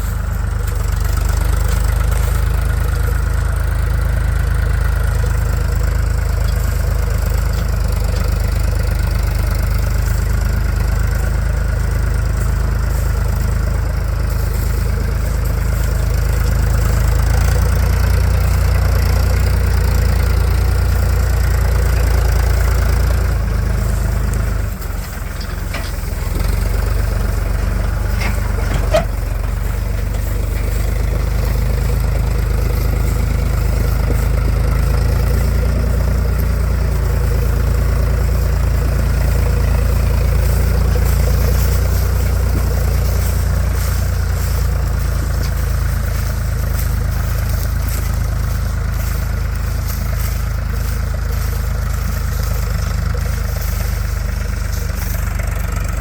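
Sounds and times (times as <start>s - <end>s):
diesel engines running: 0.0s - 56.0s
metal clank: 23.8s - 31.4s.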